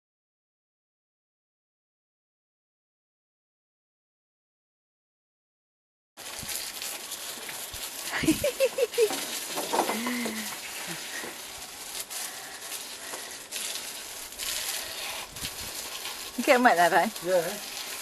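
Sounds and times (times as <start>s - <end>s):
hose spraying water: 6.2s - 18.0s
water pattering: 6.2s - 18.0s.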